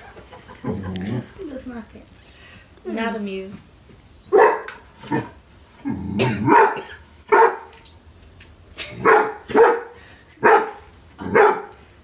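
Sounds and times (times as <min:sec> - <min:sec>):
dog barking: 0:04.3 - 0:05.2, 0:06.5 - 0:07.7, 0:09.0 - 0:11.7.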